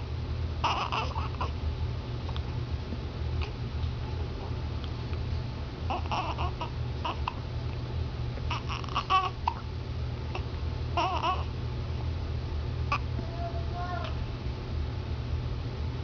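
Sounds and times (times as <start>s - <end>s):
infant hiccups: 0.6s - 1.5s, 5.9s - 7.4s, 8.5s - 9.6s
baby babbling and cooing: 0.6s - 1.6s, 5.9s - 7.4s, 8.5s - 9.6s, 10.3s - 11.5s, 12.9s - 14.3s.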